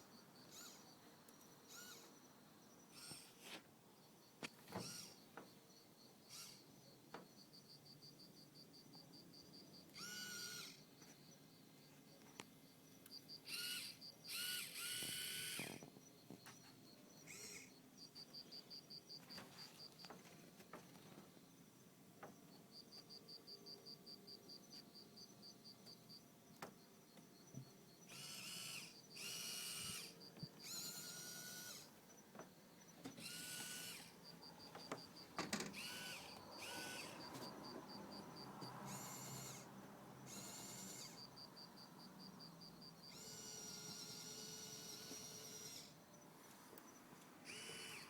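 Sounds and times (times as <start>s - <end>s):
small electric motor whirring: 0.5s - 1.0s, 1.7s - 2.2s, 2.9s - 3.6s, 4.7s - 5.2s, 6.3s - 6.6s, 10.0s - 10.8s, 13.4s - 15.9s, 17.3s - 17.7s, 28.1s - 31.9s, 33.1s - 41.3s, 43.1s - 46.0s, 47.4s - 48.0s.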